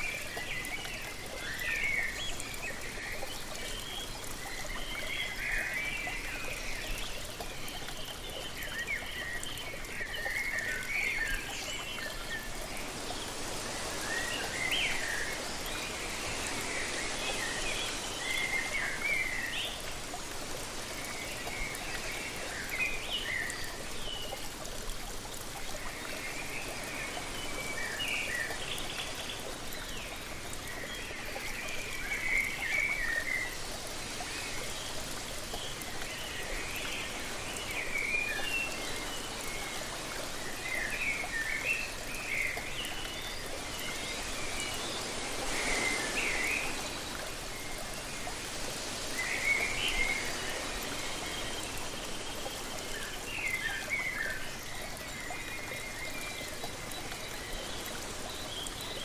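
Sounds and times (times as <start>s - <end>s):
songbirds chirping: 0.0s - 59.0s
waterfall rushing: 10.6s - 24.5s, 31.8s - 56.0s.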